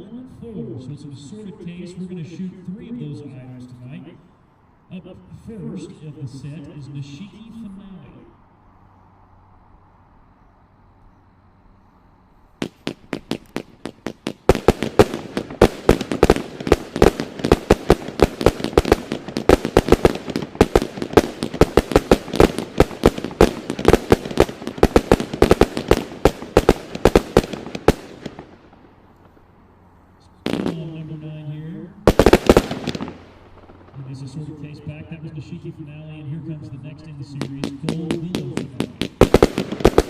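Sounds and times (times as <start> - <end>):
fireworks barrage firing: 12.6 - 29.5, 30.4 - 40.0.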